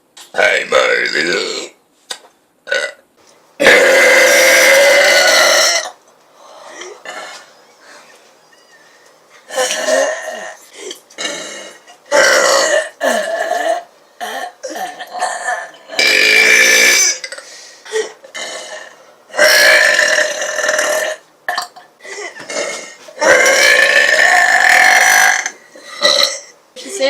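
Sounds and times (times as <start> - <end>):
person belching: 0.4 - 1.8, 2.7 - 3.0, 3.6 - 6.0, 9.5 - 26.5.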